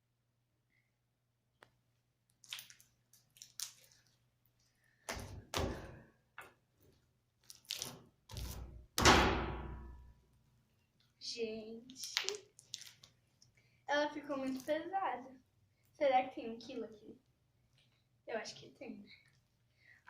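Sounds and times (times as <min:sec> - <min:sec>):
slime squelching and thudding: 0:02.4 - 0:04.2, 0:05.0 - 0:06.7, 0:07.4 - 0:10.0, 0:11.9 - 0:13.4.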